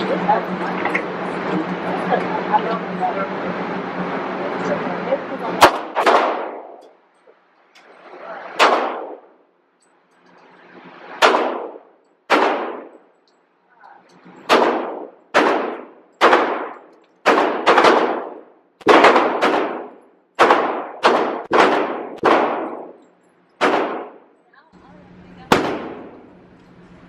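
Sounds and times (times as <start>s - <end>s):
gunshots with reverberation: 5.6s - 6.8s, 8.4s - 9.4s, 10.9s - 13.1s, 14.4s - 24.3s, 25.5s - 26.3s.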